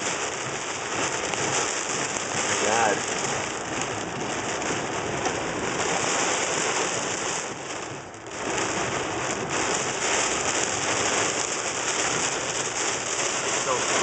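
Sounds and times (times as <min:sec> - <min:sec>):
heavy rain pouring: 0:00.0 - 0:14.0.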